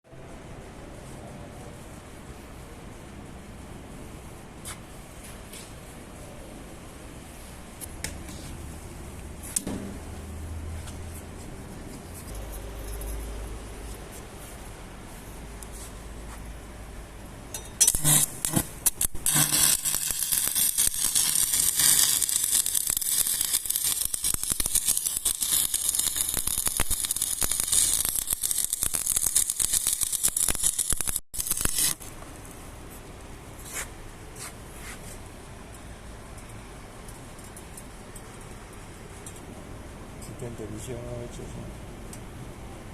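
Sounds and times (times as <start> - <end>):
welding arc crackling: 17.8 - 32.1
welding machine humming: 17.8 - 32.2.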